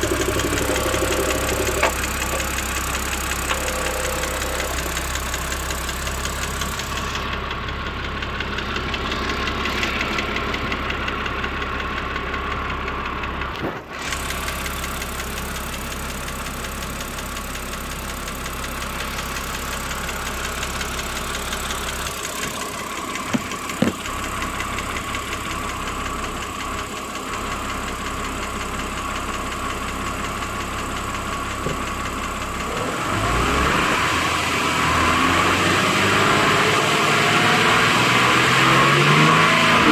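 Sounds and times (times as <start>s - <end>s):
car engine idling with ticking: 0.0s - 39.9s.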